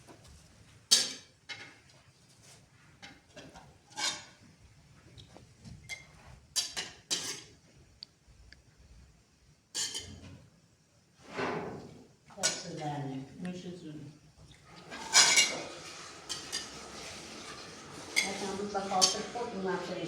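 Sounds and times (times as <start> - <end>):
dishes and cutlery clattering: 5.9 - 7.6, 9.8 - 10.4, 14.8 - 19.6.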